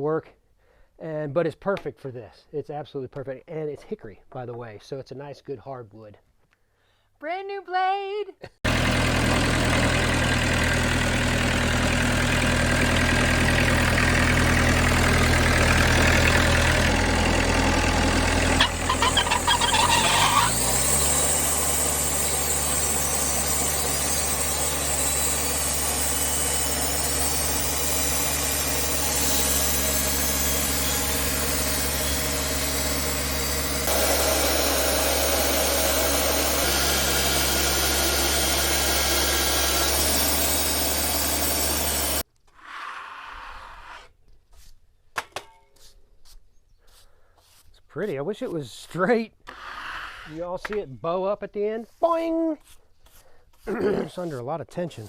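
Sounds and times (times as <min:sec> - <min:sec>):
band sawmill engine humming: 0:08.7 - 0:42.2
saw blade cutting log: 0:08.7 - 0:44.1.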